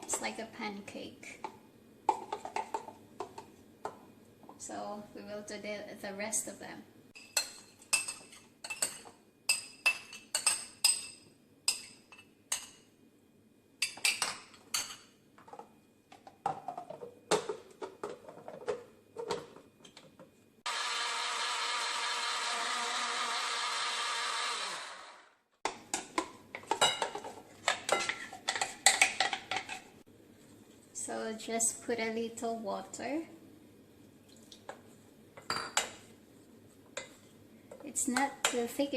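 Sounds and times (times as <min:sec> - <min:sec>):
dishes and utensils clinking: 0:07.2 - 0:12.9, 0:26.6 - 0:29.9
electric grinder blending: 0:20.6 - 0:25.4.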